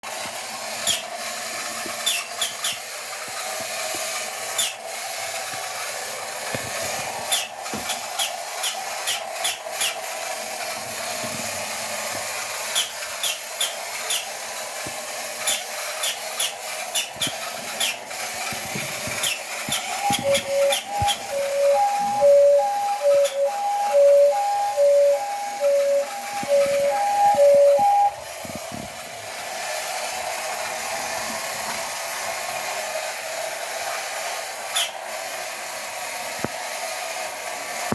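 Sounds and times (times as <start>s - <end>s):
toy car electric motor whirring: 0.1s - 37.9s
toy car clicks: 0.2s - 21.7s, 33.8s - 35.2s
sharp screeching squeaks: 2.0s - 2.8s.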